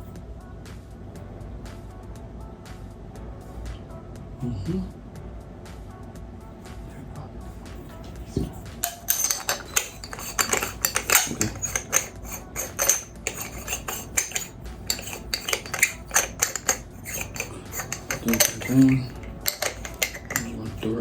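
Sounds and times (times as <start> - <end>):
metal parts clinking: 8.8 - 21.0.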